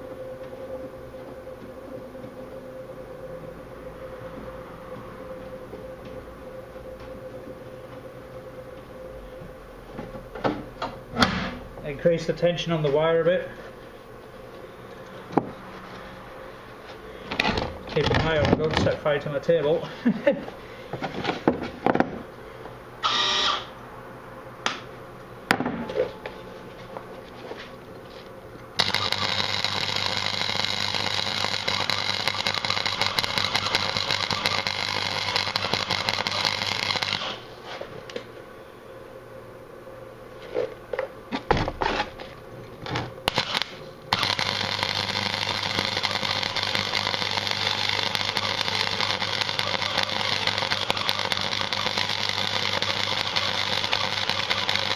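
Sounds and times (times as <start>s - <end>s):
welder hum: 22.1s - 23.9s, 28.8s - 38.9s, 41.8s - 54.9s
welder sputters: 28.8s - 37.5s, 43.2s - 54.9s
welding arc crackling: 28.8s - 37.5s, 43.2s - 54.9s.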